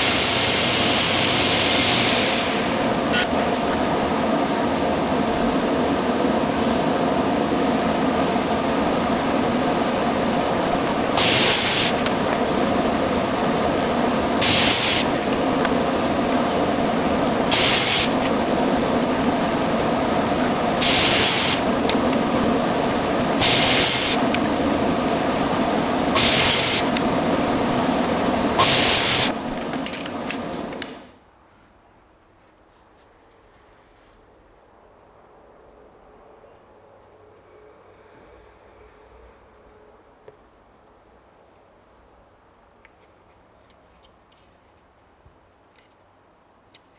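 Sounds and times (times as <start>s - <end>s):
burst of hiss: 0.0s - 5.2s, 8.3s - 29.6s
power tool running: 0.0s - 6.1s, 7.8s - 30.8s.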